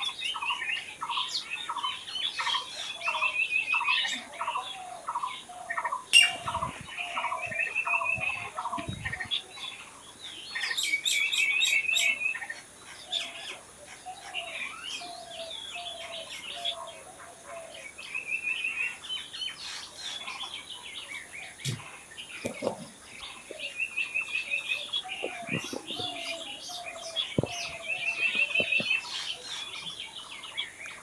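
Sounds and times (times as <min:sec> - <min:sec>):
bird trill: 0:00.0 - 0:09.7, 0:23.2 - 0:31.0
birds singing and chirping: 0:00.0 - 0:31.0
low whistled bird notes: 0:06.1 - 0:09.4, 0:23.6 - 0:29.9.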